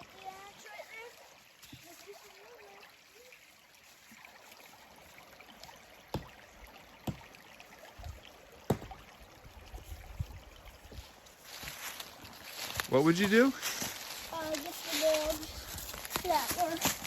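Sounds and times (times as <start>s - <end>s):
creek running: 0.0s - 17.0s
low thumps of logs in water: 5.6s - 12.0s
sharp knocks: 6.1s - 6.3s, 7.0s - 7.3s, 8.7s - 9.0s.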